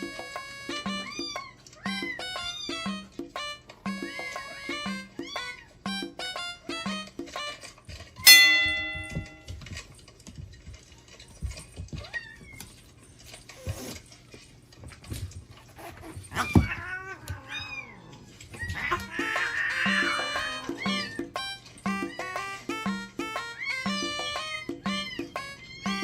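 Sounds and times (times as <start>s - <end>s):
bell-like chime: 8.2s - 9.6s
kitten mewing: 16.2s - 21.3s.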